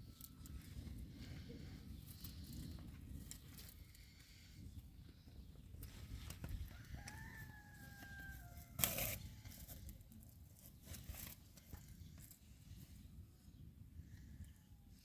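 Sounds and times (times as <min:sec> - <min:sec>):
rooster crowing: 0:06.7 - 0:08.8.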